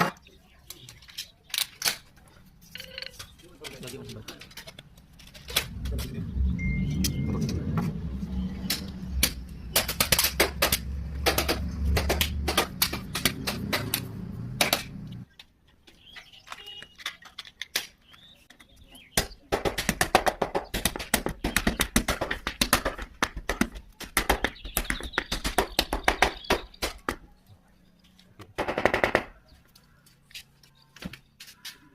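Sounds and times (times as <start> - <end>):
rapid taps on metal: 19.2 - 27.2.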